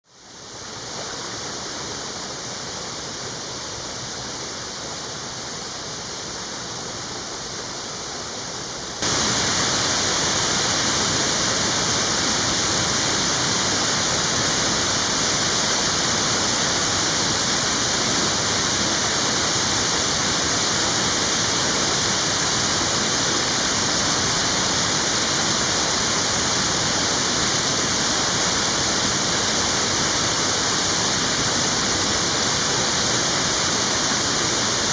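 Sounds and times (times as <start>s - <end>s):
waterfall rushing: 8.6s - 34.9s.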